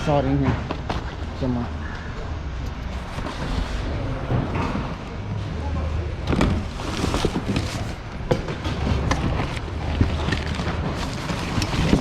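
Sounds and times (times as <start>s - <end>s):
plastic cases clacking together: 6.3s - 12.0s.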